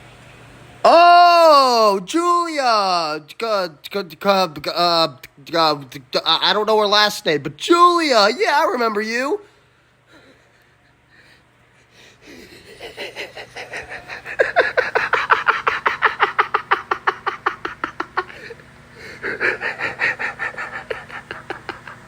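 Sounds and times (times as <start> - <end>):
person wheezing laughter: 12.0 - 22.0.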